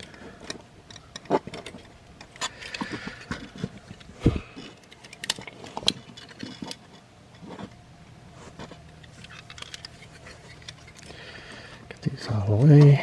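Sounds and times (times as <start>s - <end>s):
plastic toy parts clicking: 0.0s - 7.0s, 8.9s - 11.1s.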